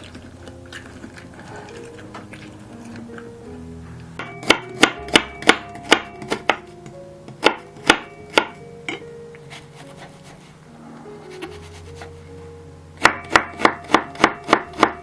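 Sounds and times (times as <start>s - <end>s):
soft background music: 0.0s - 15.0s
knife chopping on cutting board: 4.2s - 6.6s, 7.3s - 8.6s, 13.0s - 15.0s.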